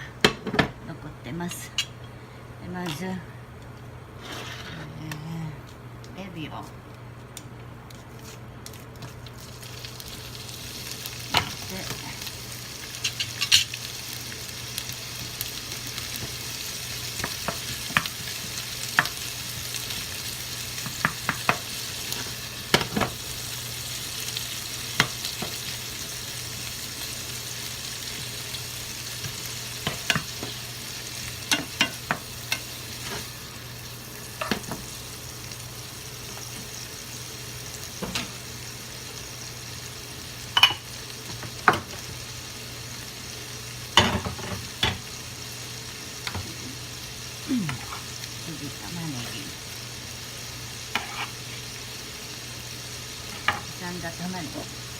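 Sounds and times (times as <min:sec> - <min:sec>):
spatula scraping a pan: 0:04.2 - 0:04.9, 0:50.9 - 0:51.6
shrimp sizzling in hot oil: 0:09.2 - 0:54.9.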